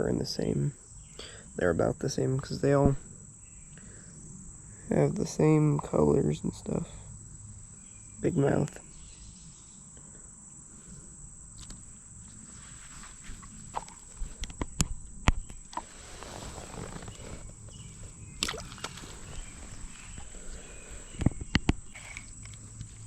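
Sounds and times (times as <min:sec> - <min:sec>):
high insect drone: 0:00.0 - 0:23.0
sharp knocks and clicks: 0:21.2 - 0:22.6.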